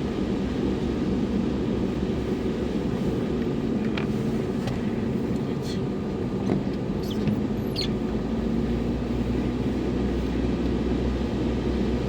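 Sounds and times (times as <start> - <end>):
car engine rumble: 0.0 - 12.0
road noise: 0.0 - 12.0
brief high squeaks: 7.0 - 8.0.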